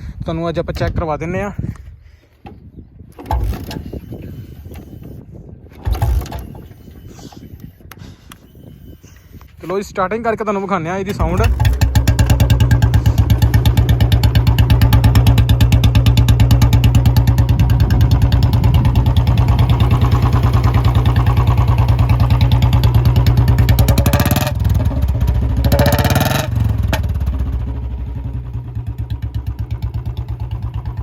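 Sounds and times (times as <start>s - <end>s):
motorcycle engine idling and revving: 3.1s - 7.8s, 11.1s - 31.0s.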